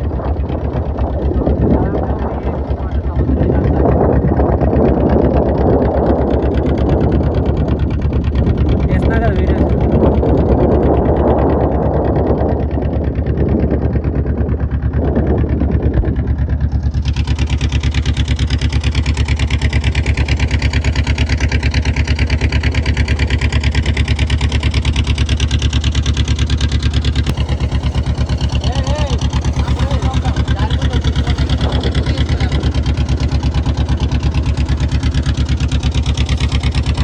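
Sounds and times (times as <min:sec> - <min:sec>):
motor boat engine running: 0:00.0 - 0:37.0
rushing noise: 0:27.3 - 0:37.0.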